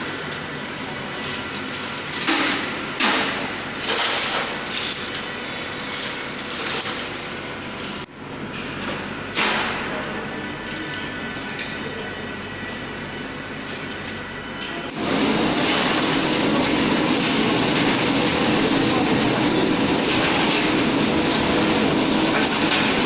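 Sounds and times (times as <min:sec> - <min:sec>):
machinery humming: 0:00.0 - 0:23.0
loud clattering bursts: 0:14.9 - 0:23.0.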